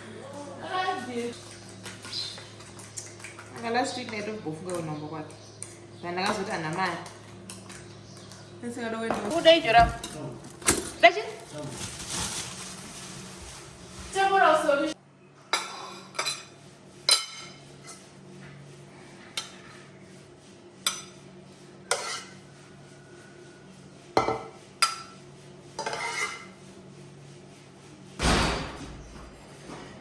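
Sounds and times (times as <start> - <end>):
dishes and cutlery clinking: 15.6 - 18.0, 25.8 - 26.5.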